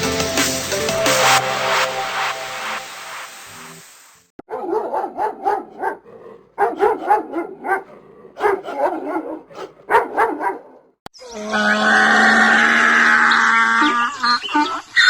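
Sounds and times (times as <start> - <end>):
dog barking: 4.4 - 11.0.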